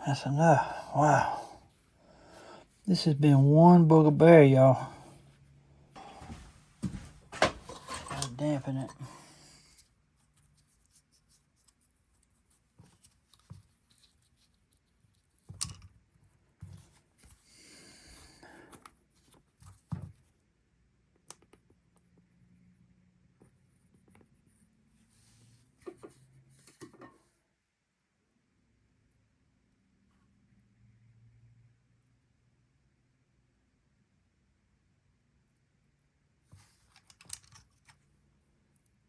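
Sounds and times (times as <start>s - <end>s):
tools tapping and clicking: 6.2s - 9.0s.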